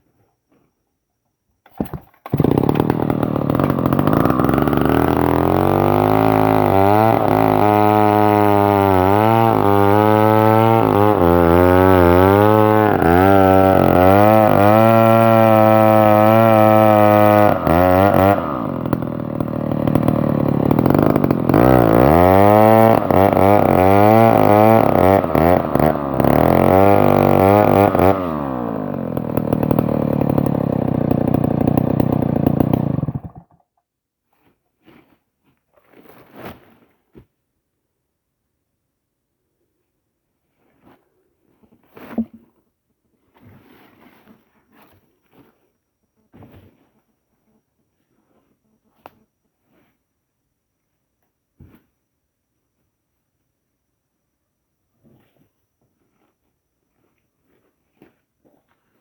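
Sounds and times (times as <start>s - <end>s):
chainsaw engine revving: 1.7s - 33.6s.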